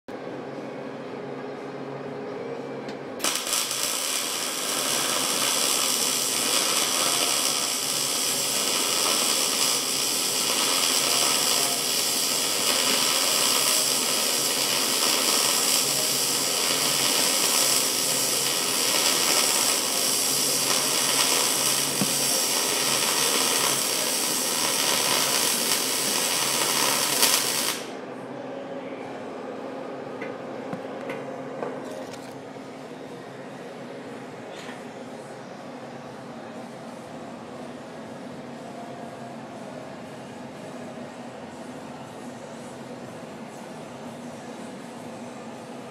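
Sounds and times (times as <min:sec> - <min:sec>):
welding arc hissing: 0:03.2 - 0:28.0.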